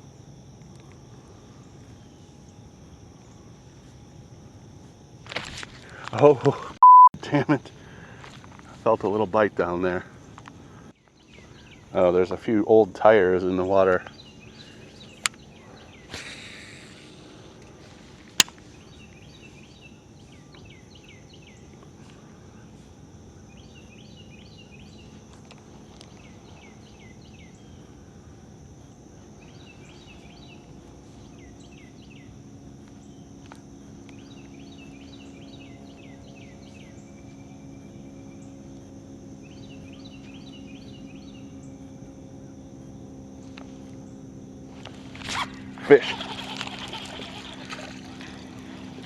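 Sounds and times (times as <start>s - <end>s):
high insect drone: 0.0s - 49.0s
low motor hum: 23.4s - 49.0s.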